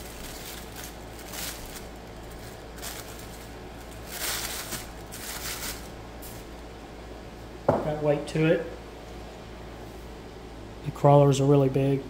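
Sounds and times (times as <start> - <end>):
wrapping rustling: 0.0 - 6.6.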